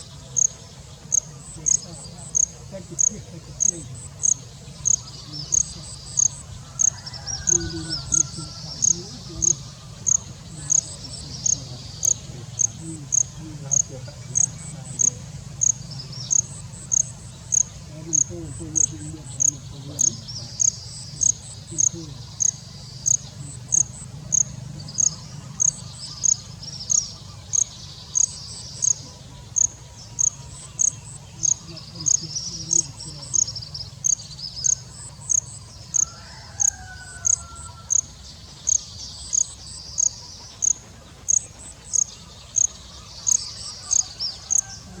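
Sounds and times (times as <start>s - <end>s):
birds chattering softly: 0.0s - 45.0s
cricket chirping: 0.0s - 45.0s.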